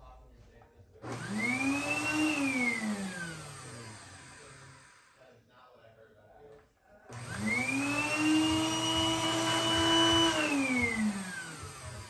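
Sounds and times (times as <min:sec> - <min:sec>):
vacuum cleaner motor whine: 0:01.0 - 0:05.2, 0:07.1 - 0:12.0.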